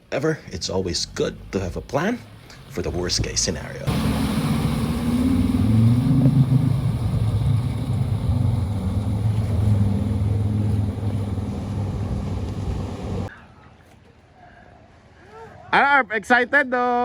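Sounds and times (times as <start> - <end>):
vehicle engine running: 0.4 - 13.3.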